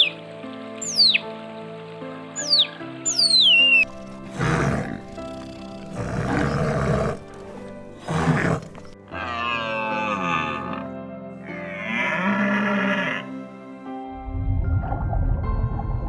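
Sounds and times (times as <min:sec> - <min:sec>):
background music: 0:00.0 - 0:16.0
wild animal calling: 0:02.4 - 0:13.3.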